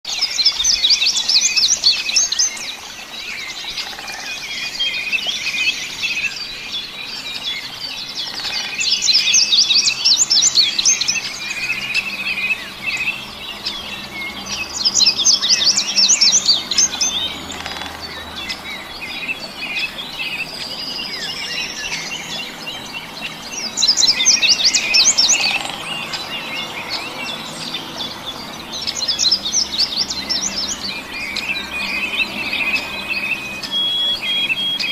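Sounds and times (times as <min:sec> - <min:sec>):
birds chirping softly: 0:00.1 - 0:34.9
songbird trilling: 0:00.2 - 0:34.9
rising whistle: 0:33.3 - 0:34.9.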